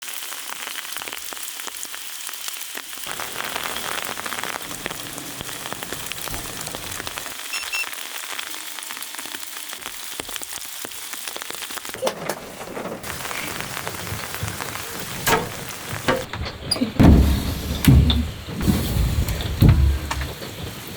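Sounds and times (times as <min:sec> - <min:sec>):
steady rainfall: 0:00.0 - 0:20.9.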